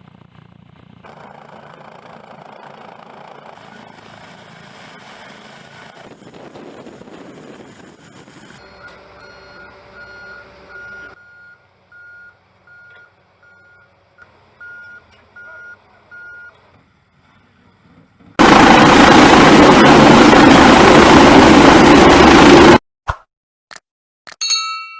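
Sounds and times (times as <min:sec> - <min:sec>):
loud rushing noise: 0:18.4 - 0:22.8.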